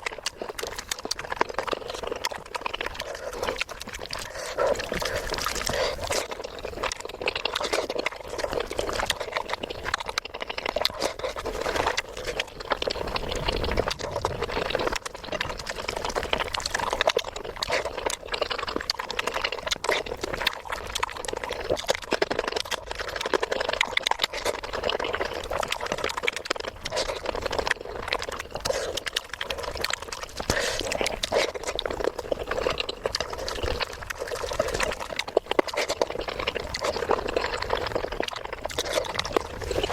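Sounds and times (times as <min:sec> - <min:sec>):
wet chewing and slurping: 0:00.0 - 0:39.9.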